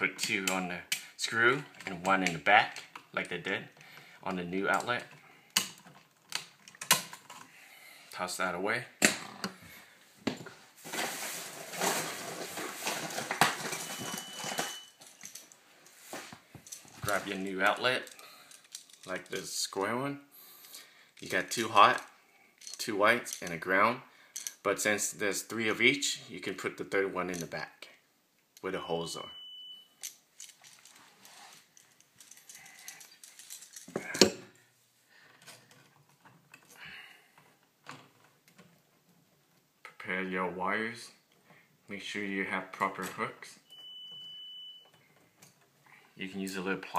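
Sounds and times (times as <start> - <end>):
clicks and rattles of handled outlet: 4.7 - 7.4
rustling and knocking of handling: 9.0 - 19.1.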